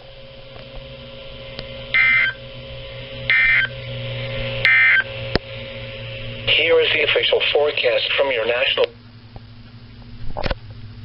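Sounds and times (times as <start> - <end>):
low receiver hum: 0.0 - 11.0
buzzy digital data bursts: 1.8 - 8.8.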